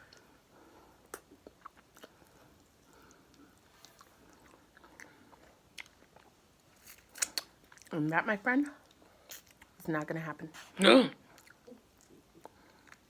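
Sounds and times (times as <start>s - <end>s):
faint chewing: 0.0s - 13.0s
wet mouth clicks: 7.2s - 7.5s.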